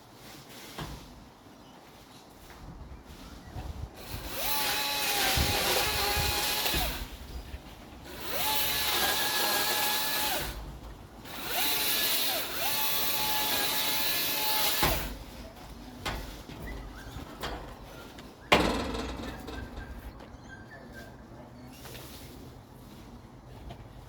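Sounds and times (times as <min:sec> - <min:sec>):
electric trimmer motor: 0:04.0 - 0:07.1, 0:08.1 - 0:10.6, 0:11.3 - 0:15.2.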